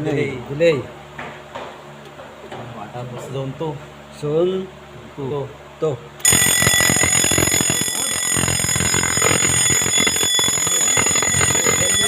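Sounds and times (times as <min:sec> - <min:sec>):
fire alarm bell ringing: 0:06.2 - 0:12.0.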